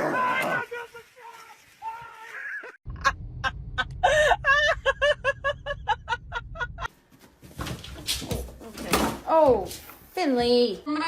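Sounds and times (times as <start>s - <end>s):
low rumble: 2.9s - 6.9s.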